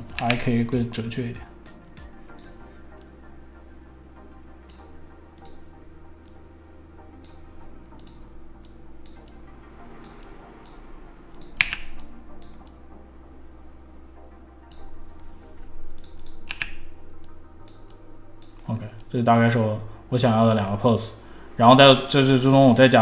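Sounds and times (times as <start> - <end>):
computer keyboard and mouse clicks: 0.0 - 0.9, 2.0 - 3.2, 4.6 - 6.5, 7.2 - 9.4, 10.0 - 12.8, 14.6 - 19.2
faint background music: 0.0 - 23.0
steady hum: 0.0 - 23.0.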